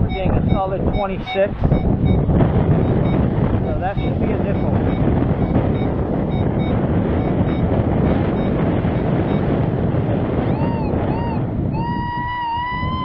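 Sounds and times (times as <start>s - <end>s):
metal detector beeps and tone: 0.0s - 9.6s
wind buffeting microphone: 0.0s - 13.0s.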